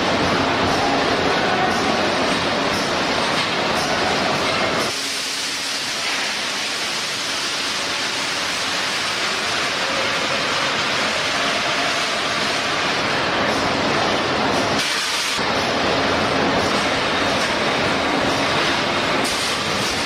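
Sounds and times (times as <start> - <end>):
welding line rushing hiss: 4.8 - 12.9, 14.8 - 15.4.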